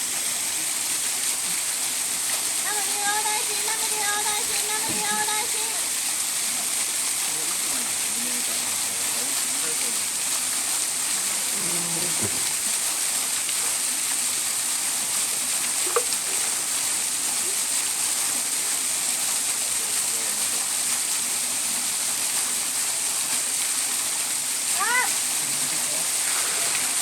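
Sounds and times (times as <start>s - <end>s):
waterfall rushing: 1.7s - 14.4s, 24.4s - 27.0s.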